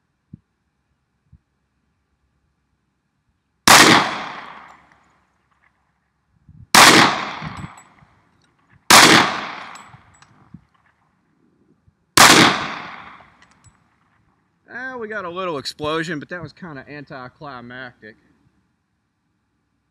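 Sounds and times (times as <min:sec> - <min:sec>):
pistol shots: 0:03.7 - 0:04.9, 0:06.8 - 0:07.8, 0:08.9 - 0:10.0, 0:12.2 - 0:13.4.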